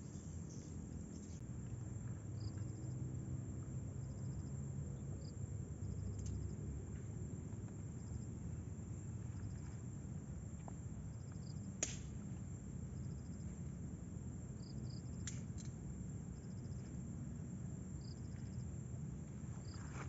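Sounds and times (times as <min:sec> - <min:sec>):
insects chirping: 0:00.0 - 0:06.8, 0:07.4 - 0:20.0.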